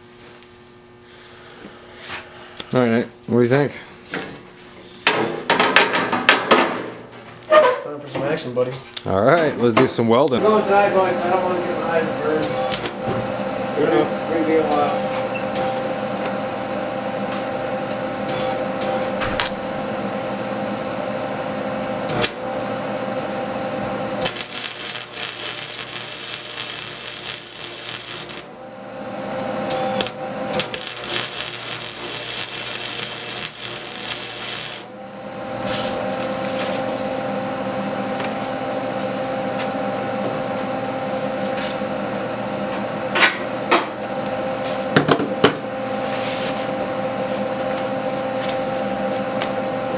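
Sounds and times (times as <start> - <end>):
machine hum: 10.4 - 15.1, 19.5 - 38.8
welding arc crackling hiss: 12.4 - 13.1, 24.1 - 28.5, 29.7 - 37.0.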